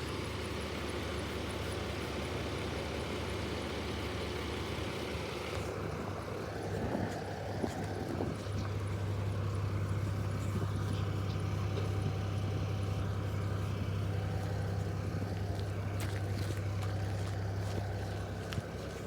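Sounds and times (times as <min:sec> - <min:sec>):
concrete mixer truck humming: 0:00.0 - 0:19.0.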